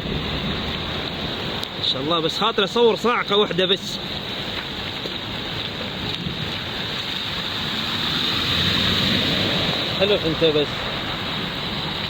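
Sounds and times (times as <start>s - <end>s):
wind noise on microphone: 0.0s - 1.9s, 4.0s - 10.0s.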